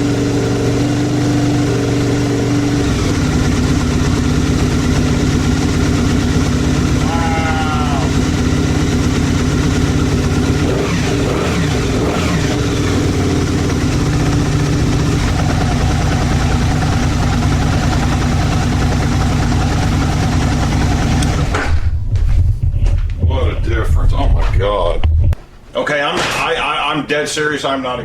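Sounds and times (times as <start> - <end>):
motorcycle engine idling: 0.0 - 22.0.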